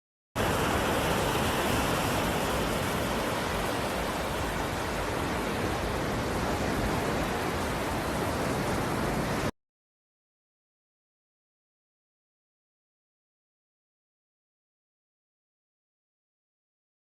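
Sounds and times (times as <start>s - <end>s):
rush of running water: 0.4s - 9.5s.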